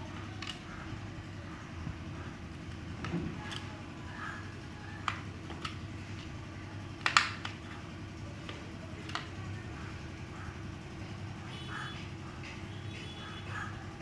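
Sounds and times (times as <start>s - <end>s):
steady low hum: 0.0s - 14.0s
memory module clips clicking: 7.0s - 7.6s.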